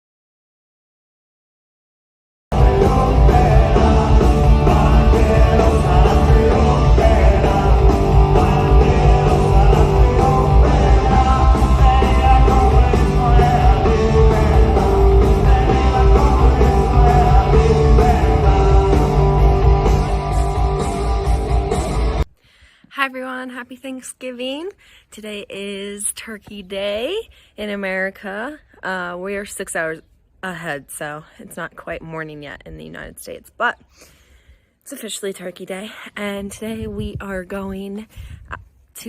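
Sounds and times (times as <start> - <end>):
loud rock music with singing: 2.5 - 22.3.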